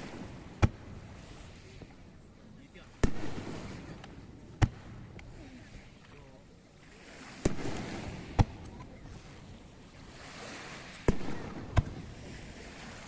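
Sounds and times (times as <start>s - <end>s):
fireworks bangs with echo: 3.0s - 5.3s, 7.4s - 8.6s, 11.0s - 12.3s.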